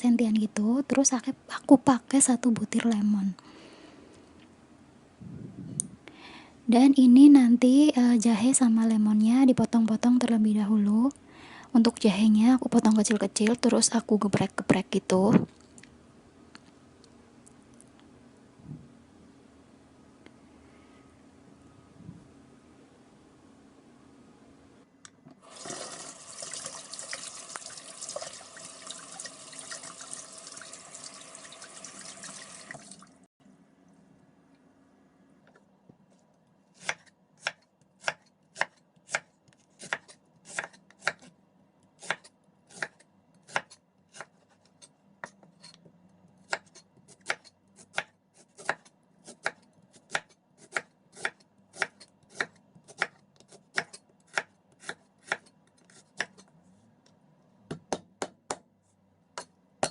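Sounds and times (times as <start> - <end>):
tap water running: 25.4 - 33.2
knife chopping on cutting board: 36.8 - 41.3, 42.0 - 45.4, 46.5 - 56.4.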